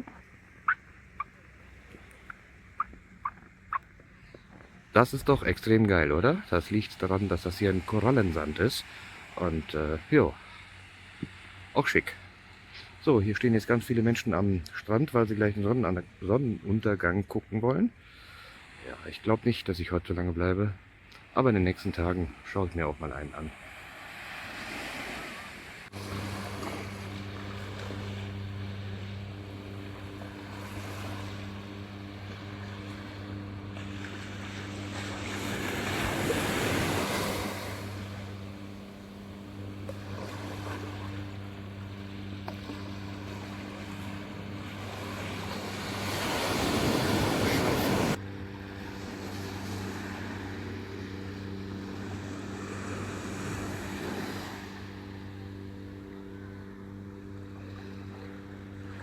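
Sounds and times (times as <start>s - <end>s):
low motor hum: 0.0s - 16.8s, 25.0s - 59.0s
waves washing on beach: 23.4s - 56.8s.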